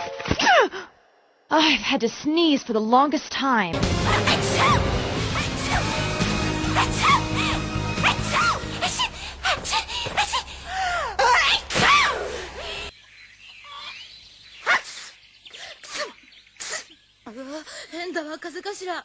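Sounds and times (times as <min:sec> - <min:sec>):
woman sneezing: 0:15.8 - 0:17.0.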